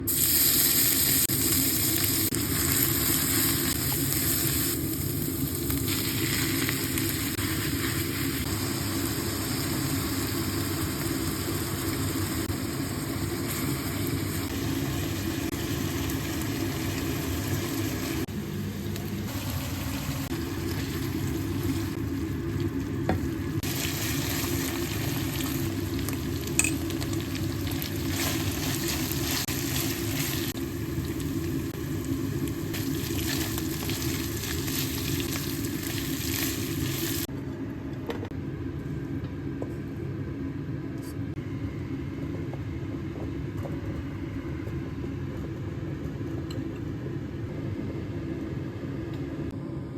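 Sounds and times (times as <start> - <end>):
meat sizzling in a pan: 0.1 - 18.3, 23.5 - 37.3.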